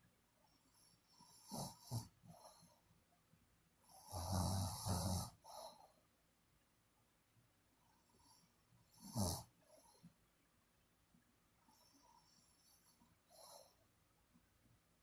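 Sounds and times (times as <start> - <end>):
person snoring: 4.0 - 5.4, 9.0 - 9.5.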